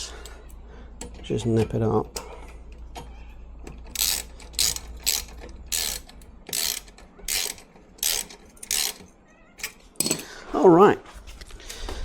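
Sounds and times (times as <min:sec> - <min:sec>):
ratchet clicking: 0:03.9 - 0:09.1.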